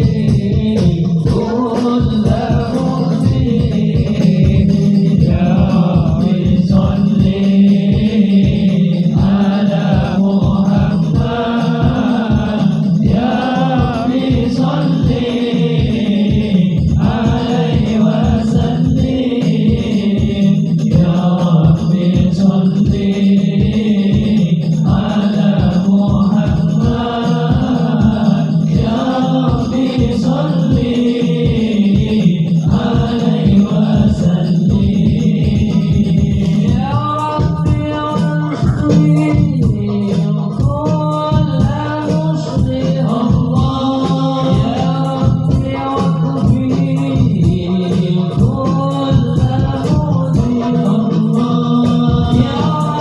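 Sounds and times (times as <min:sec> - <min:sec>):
devotional chanting voices: 0:00.0 - 0:53.0
quick rhythmic pulse: 0:00.0 - 0:53.0.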